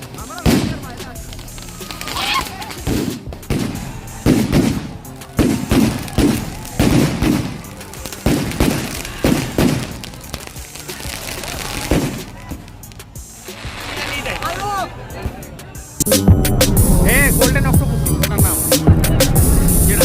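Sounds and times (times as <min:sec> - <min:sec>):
firework and firecracker bangs: 0:00.0 - 0:14.8.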